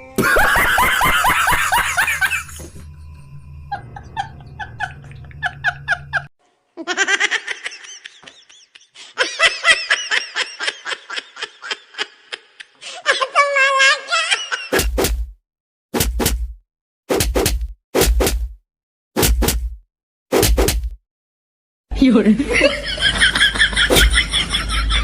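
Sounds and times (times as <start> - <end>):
high-pitched laughter: 3.7 - 14.8, 22.5 - 25.0.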